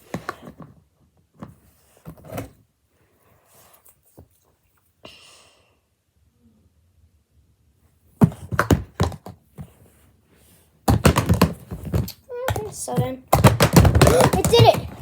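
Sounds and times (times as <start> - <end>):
small objects knocking on hard surface: 10.9 - 15.0.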